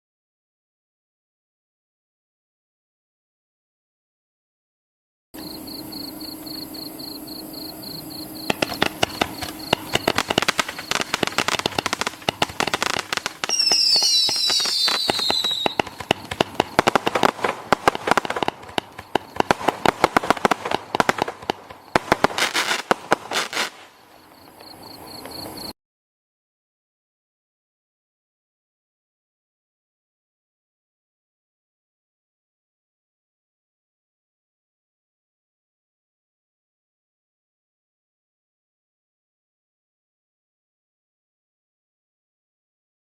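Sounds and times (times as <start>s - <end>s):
falling firework whistle: 5.4s - 25.8s
fireworks popping and crackling: 8.2s - 25.7s.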